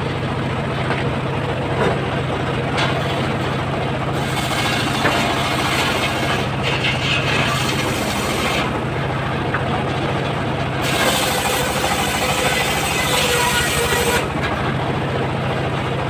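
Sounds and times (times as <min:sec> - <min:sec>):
engine running: 0:00.0 - 0:16.0
high hissing saw: 0:04.2 - 0:08.7, 0:10.8 - 0:14.3.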